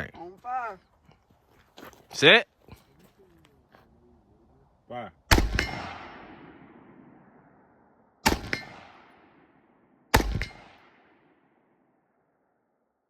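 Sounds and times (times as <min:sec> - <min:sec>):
rifle shots: 0:05.3 - 0:07.5, 0:08.2 - 0:11.5.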